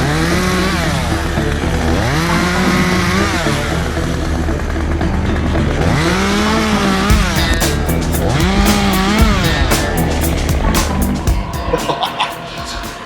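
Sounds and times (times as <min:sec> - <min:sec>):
chainsaw revving: 0:00.0 - 0:05.0
background music: 0:00.0 - 0:13.0.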